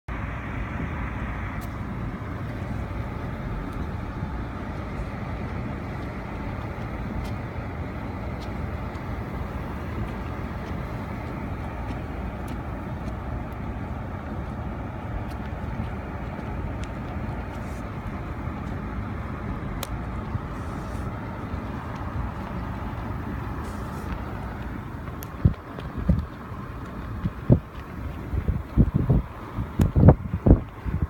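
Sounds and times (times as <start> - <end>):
wind buffeting microphone: 0.1 - 31.0
faint ticks: 19.7 - 31.0.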